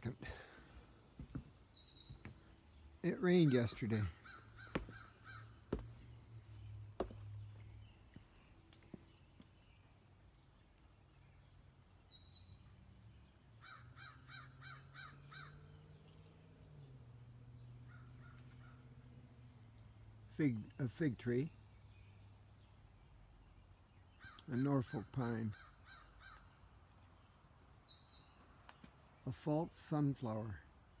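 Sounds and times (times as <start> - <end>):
small birds chirping: 0.0 - 31.0
crows cawing: 3.4 - 6.0, 13.6 - 15.8, 17.8 - 18.9, 24.2 - 26.6.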